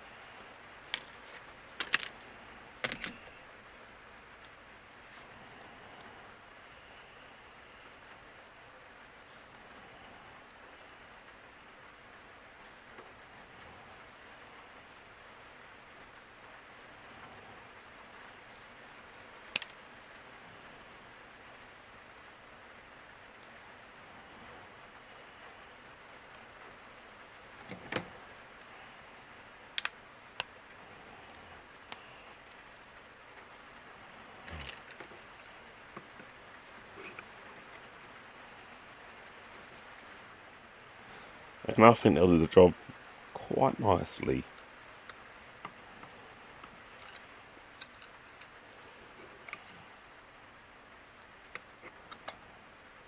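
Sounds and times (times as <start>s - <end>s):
faint steady hiss: 0.0s - 53.0s
plastic parts clicking: 0.8s - 3.4s, 19.4s - 19.8s, 29.7s - 30.6s, 34.5s - 36.3s, 46.6s - 48.6s, 51.5s - 52.4s.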